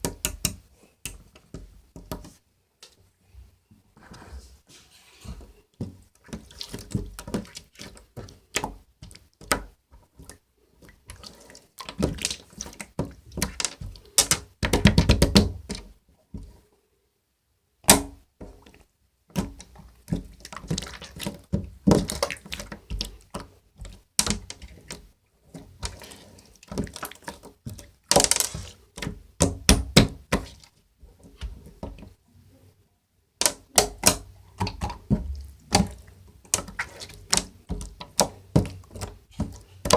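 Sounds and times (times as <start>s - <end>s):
hands squishing slime: 5.9s - 16.6s, 18.6s - 32.2s, 33.4s - 39.9s.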